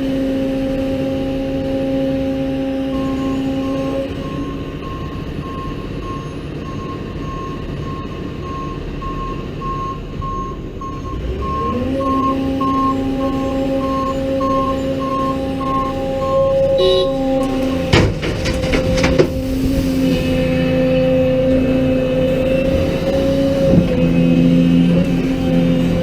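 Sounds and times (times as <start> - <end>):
heavy machine engine running: 0.0 - 26.0
backup alarm beeping: 3.0 - 19.1.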